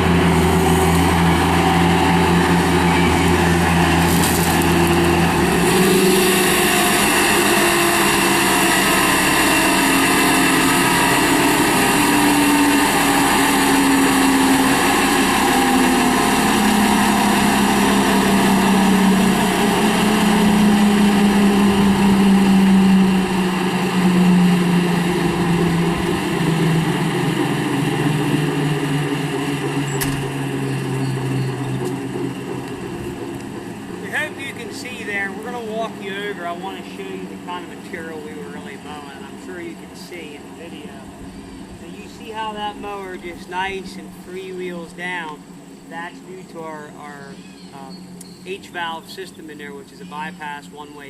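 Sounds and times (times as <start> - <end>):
loader engine and brush cutter drone: 0.0 - 51.0.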